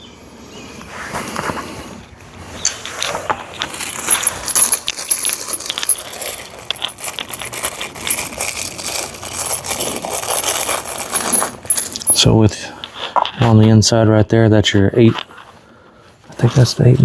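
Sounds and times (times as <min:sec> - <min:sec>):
metal parts clinking and rattling: 0:02.6 - 0:13.4.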